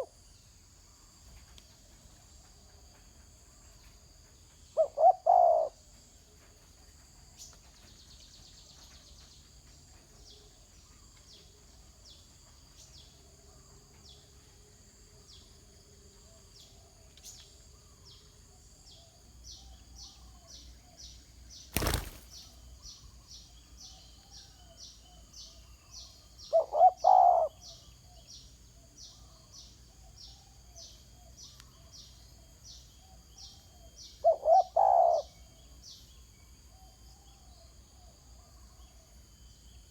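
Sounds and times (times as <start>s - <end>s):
dove cooing: 4.8s - 5.8s, 26.5s - 27.6s, 34.2s - 35.3s.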